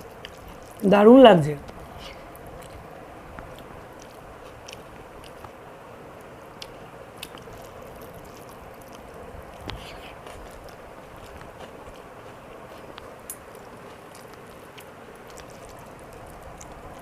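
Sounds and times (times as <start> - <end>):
person chewing food: 0.0 - 0.8, 1.6 - 17.0
steady background hiss: 0.0 - 17.0
small mouth clicks: 6.6 - 12.0.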